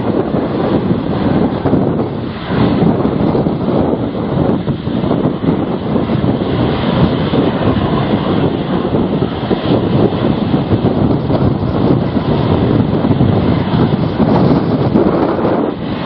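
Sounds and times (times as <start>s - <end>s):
strong wind buffeting microphone: 0.0s - 16.0s.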